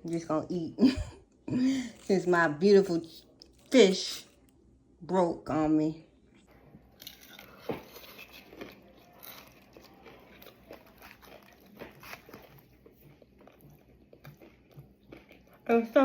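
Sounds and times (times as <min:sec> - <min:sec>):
person chewing crunchy food: 0:06.4 - 0:15.7.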